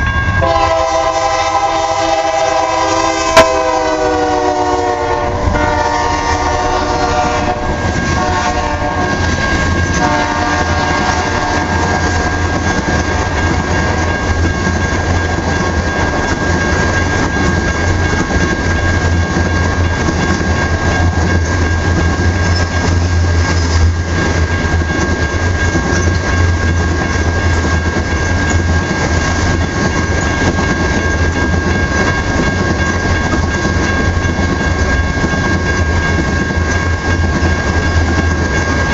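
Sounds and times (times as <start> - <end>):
train cars rumbling on rails: 0.0 - 38.9
locomotive horn chord: 0.4 - 9.2, 10.0 - 11.8.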